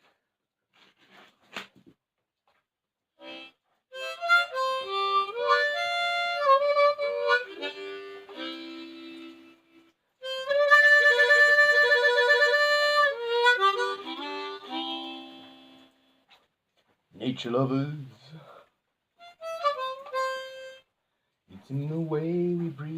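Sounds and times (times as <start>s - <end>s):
harmonica playing chords: 3.2s - 16.1s, 19.2s - 20.9s.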